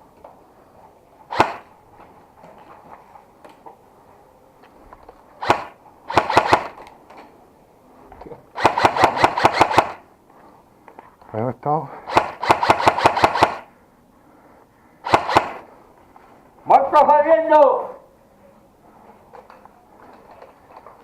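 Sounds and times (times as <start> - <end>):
airsoft guns firing: 1.3 - 1.8, 5.4 - 6.9, 8.5 - 10.1, 12.0 - 13.7, 15.0 - 15.7.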